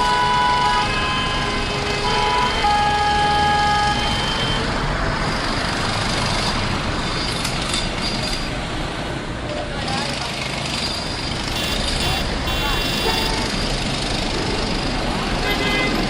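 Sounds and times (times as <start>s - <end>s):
car horns honking: 0.0s - 4.8s, 11.5s - 13.6s
traffic engine and road noise: 0.0s - 16.0s.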